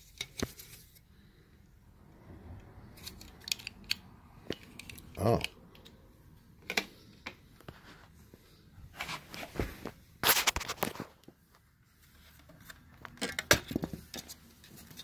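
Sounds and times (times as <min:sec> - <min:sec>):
plastic parts clicking: 0:02.9 - 0:06.0, 0:12.5 - 0:15.0.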